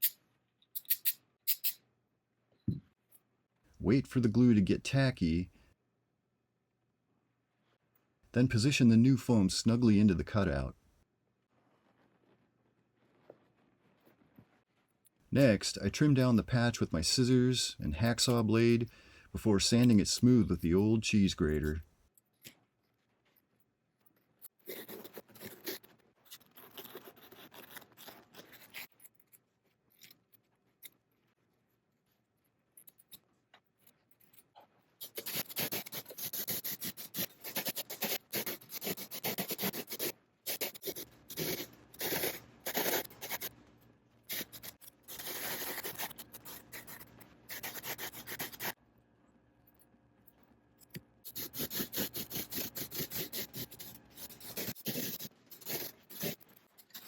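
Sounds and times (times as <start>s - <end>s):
scissors cutting foam: 24.5s - 31.1s, 35.0s - 43.6s, 44.2s - 48.8s, 50.9s - 57.0s
grater rasping foam: 24.6s - 29.0s, 35.0s - 43.6s, 44.3s - 48.8s, 51.3s - 57.0s
hacksaw blade scraping foam: 24.6s - 29.1s, 35.0s - 43.6s, 44.3s - 48.8s, 51.3s - 57.0s.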